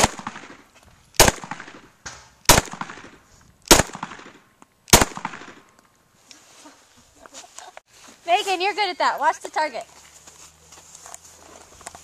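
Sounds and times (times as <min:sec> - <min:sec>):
pistol shots with echo: 0:00.0 - 0:00.6, 0:01.2 - 0:01.9, 0:02.5 - 0:05.6.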